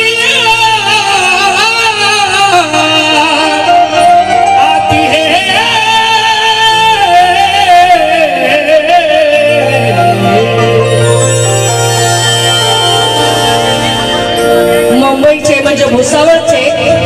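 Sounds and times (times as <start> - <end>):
instrumental accompaniment: 0.0 - 17.0
person singing ornamented notes: 0.0 - 17.0
low bass note: 9.5 - 17.0.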